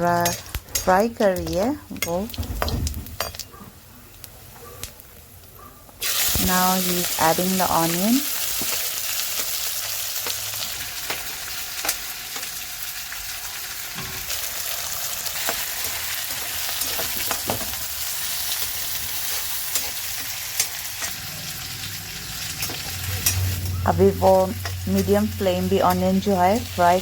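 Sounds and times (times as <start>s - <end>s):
onion sizzling in oil: 6.0s - 27.0s.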